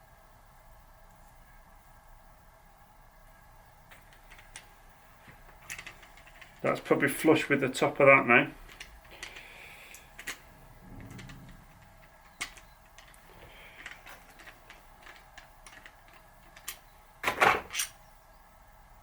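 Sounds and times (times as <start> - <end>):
metal tools clicking and tapping: 11.1 - 16.9.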